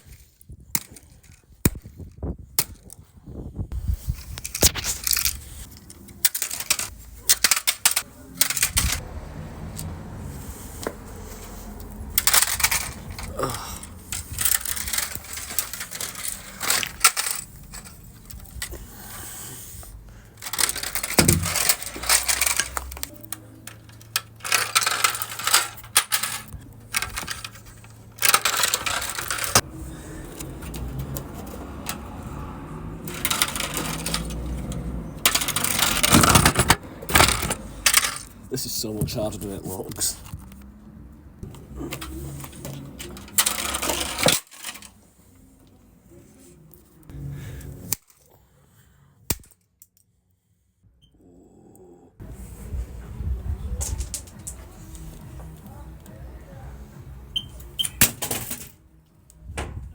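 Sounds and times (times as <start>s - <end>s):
metallic clinks and clatter: 4.4s - 9.0s, 11.4s - 18.8s, 20.4s - 29.6s, 33.0s - 38.4s.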